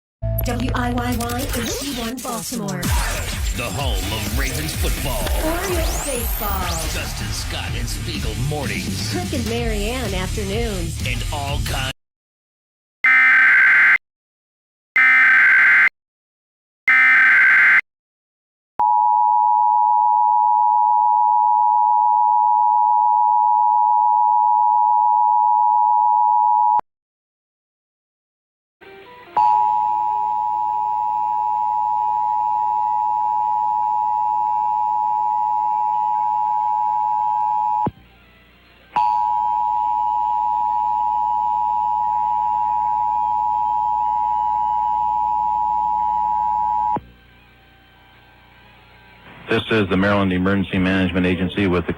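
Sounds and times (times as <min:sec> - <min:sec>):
two-tone attention signal: 0:16.9 - 0:17.8.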